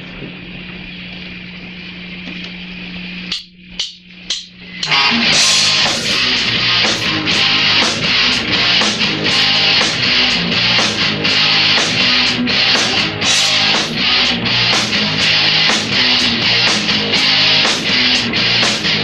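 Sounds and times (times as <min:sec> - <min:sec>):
cymbals striking: 0:03.3 - 0:10.0
droning guitar chord: 0:04.8 - 0:19.0
live rock band playing: 0:04.8 - 0:19.0.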